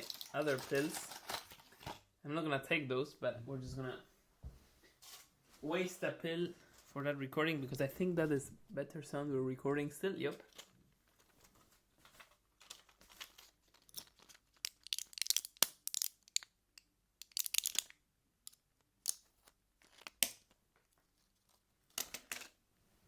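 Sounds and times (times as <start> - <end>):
packaging crinkling and tearing: 0.0 - 1.9, 10.5 - 16.5, 17.2 - 18.0.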